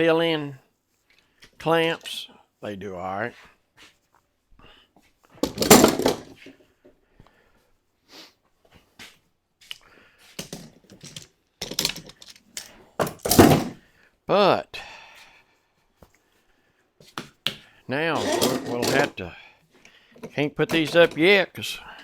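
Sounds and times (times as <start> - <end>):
metal clamps clanking: 5.4 - 6.4, 18.2 - 19.2.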